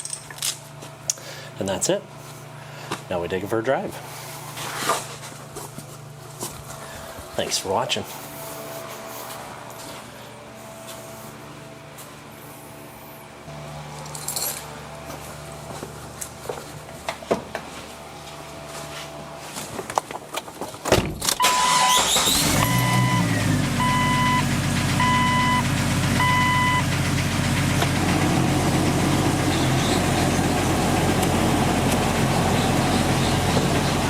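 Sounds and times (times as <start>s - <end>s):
car engine starting and idling: 21.2s - 34.0s
dashboard warning chime beeping: 21.4s - 26.9s.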